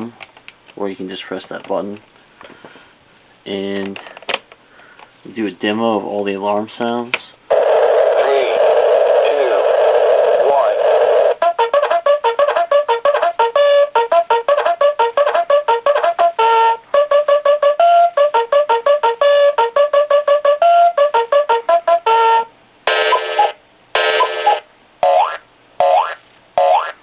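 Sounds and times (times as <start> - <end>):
electronic bugle-like tune: 10.6 - 27.0.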